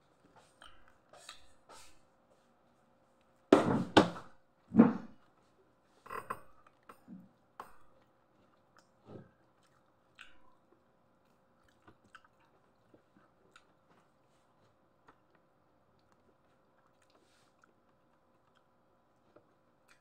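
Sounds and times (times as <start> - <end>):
chewing: 5.2 - 20.0.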